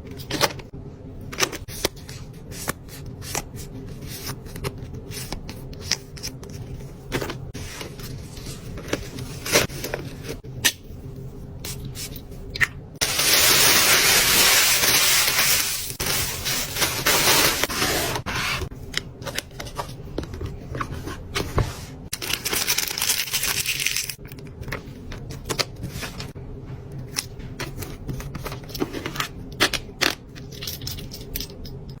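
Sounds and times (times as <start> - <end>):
packaging rustling: 13.0 - 18.3, 22.1 - 24.2
packaging scraping and tearing: 13.0 - 18.7, 22.1 - 24.2.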